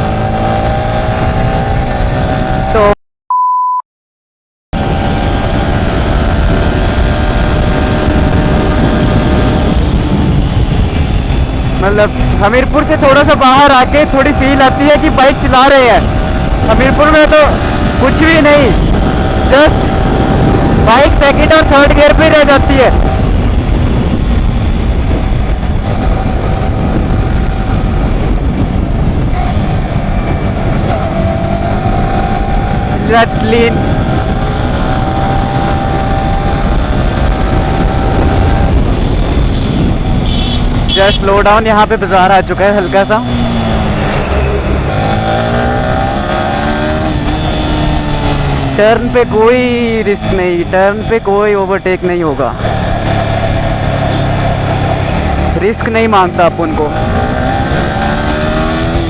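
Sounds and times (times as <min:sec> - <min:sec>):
low wind rumble: 0:00.0 - 0:03.0, 0:04.8 - 0:59.0
motorcycle engine cruising: 0:00.0 - 0:03.0, 0:04.8 - 0:59.0
short beep tone: 0:03.3 - 0:03.8.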